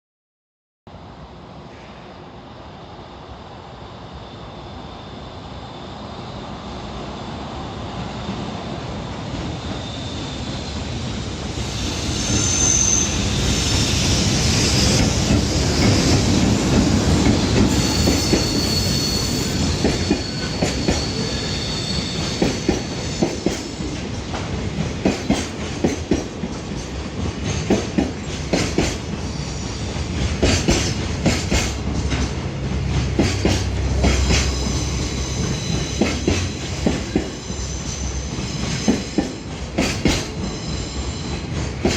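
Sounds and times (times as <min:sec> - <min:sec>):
freight train rumble: 0:00.9 - 0:41.9
wheel squeal: 0:09.5 - 0:10.8, 0:11.6 - 0:16.1, 0:17.6 - 0:23.5, 0:34.0 - 0:39.4.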